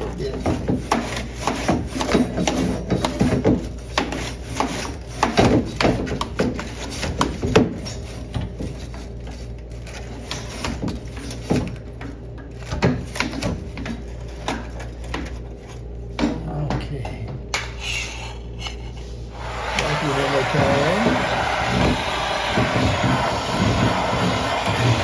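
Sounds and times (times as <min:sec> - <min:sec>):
broom bristles scrubbing coil: 0:19.4 - 0:25.0.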